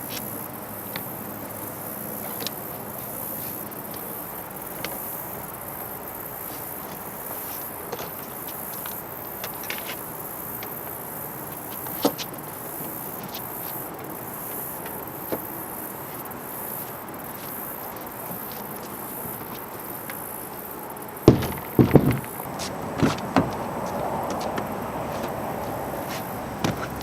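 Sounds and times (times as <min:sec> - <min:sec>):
insects buzzing: 0:00.0 - 0:27.0
light knocks: 0:21.3 - 0:24.8.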